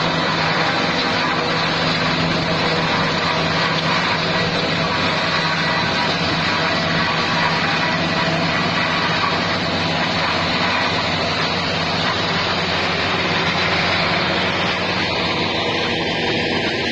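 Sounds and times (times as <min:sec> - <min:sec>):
harvester running: 0:00.0 - 0:16.9.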